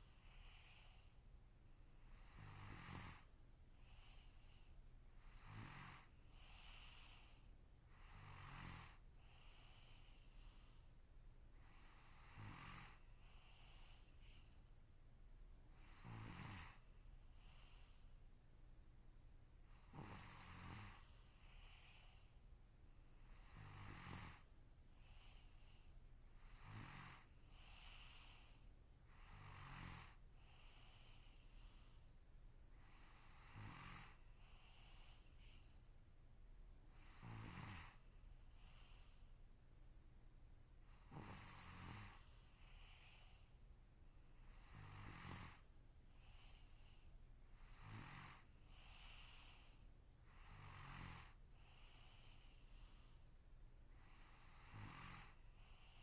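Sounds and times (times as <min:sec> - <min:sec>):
soft breathy hiss: 0:00.0 - 0:56.0
person snoring faintly: 0:02.0 - 0:10.8, 0:11.6 - 0:14.5, 0:15.8 - 0:18.1, 0:19.7 - 0:22.4, 0:23.2 - 0:25.8, 0:26.4 - 0:32.0, 0:32.7 - 0:35.7, 0:36.9 - 0:39.3, 0:40.9 - 0:43.5, 0:44.4 - 0:53.2, 0:53.9 - 0:56.0.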